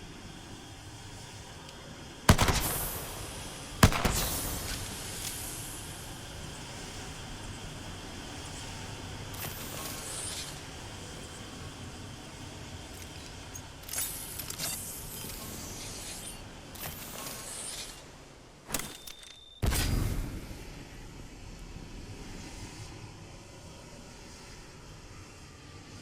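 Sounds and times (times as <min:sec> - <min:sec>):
steady background hiss: 0:00.0 - 0:18.8
gas hissing in bursts: 0:02.3 - 0:06.1.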